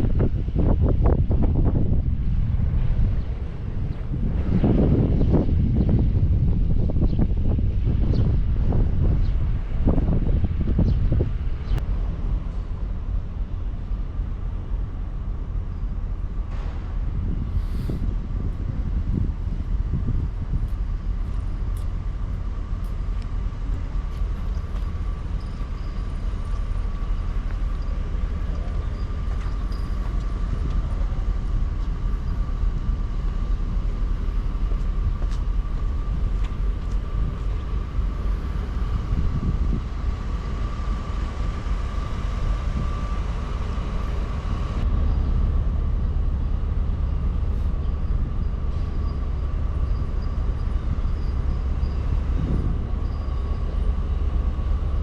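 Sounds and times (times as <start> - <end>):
vehicle rumble in motion: 0.0 - 55.0
faint steady whine: 11.2 - 55.0.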